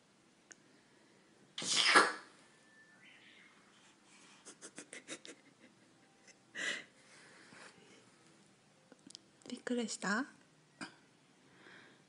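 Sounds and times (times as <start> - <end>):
person sneezing: 1.6 - 2.3.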